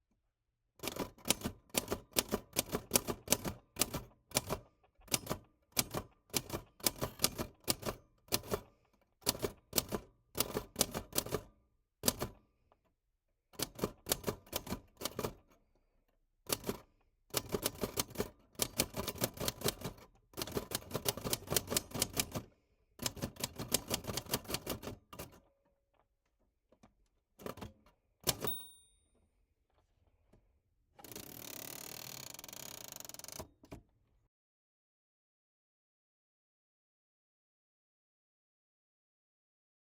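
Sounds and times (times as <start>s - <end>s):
typewriter bell ding: 28.3s - 29.1s.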